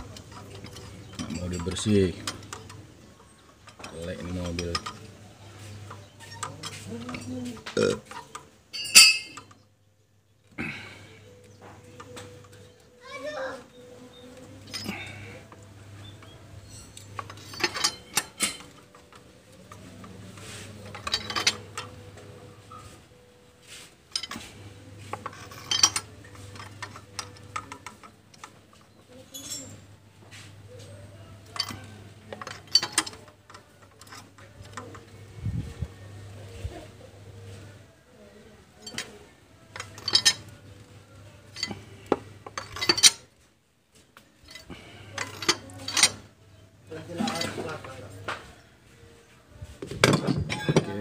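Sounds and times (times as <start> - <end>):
metal hand tools clinking: 0.0 - 9.6, 14.5 - 22.9, 24.1 - 35.2, 38.8 - 43.3, 44.4 - 46.3, 46.9 - 48.4, 50.0 - 51.0.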